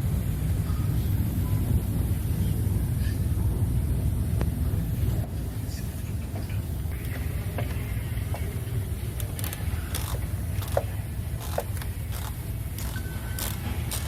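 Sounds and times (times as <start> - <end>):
engine idling: 0.0 - 14.0.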